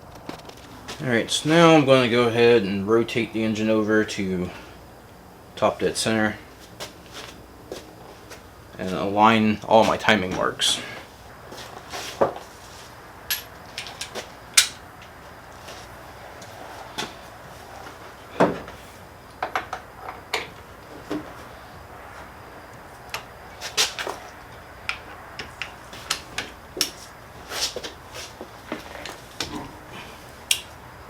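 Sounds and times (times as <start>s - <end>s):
hand tools and metal parts clinking: 13.3s - 14.8s.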